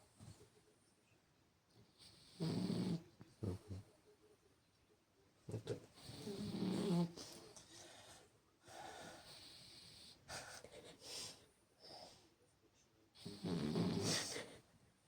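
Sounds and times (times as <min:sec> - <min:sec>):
soft snorts: 0:13.2 - 0:14.6.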